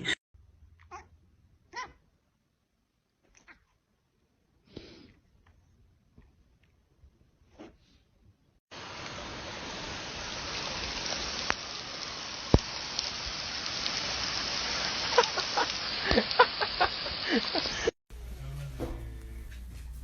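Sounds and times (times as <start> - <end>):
steady hiss: 8.7 - 20.0.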